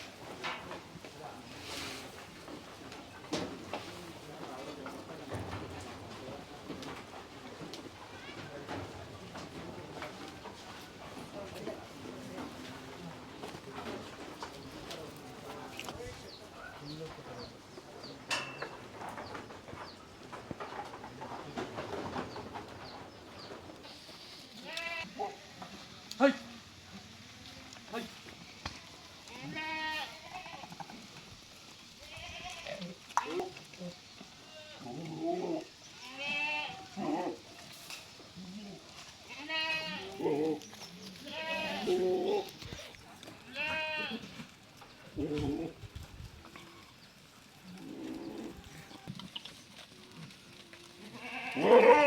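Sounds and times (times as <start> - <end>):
goats bleating: 23.8 - 25.3, 28.5 - 30.9, 32.0 - 33.4, 34.3 - 37.4, 38.8 - 40.6, 41.2 - 42.5, 43.4 - 44.4, 50.2 - 52.0.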